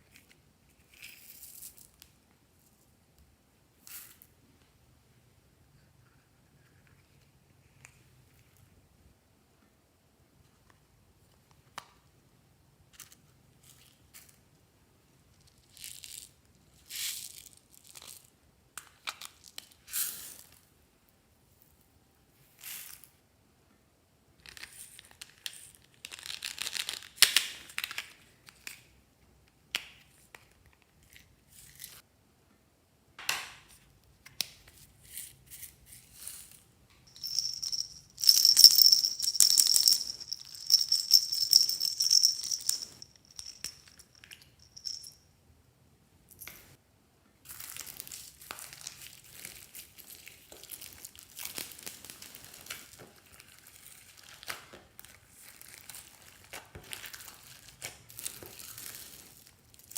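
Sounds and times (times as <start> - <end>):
slime crinkling and squishing: 47.5 - 59.9.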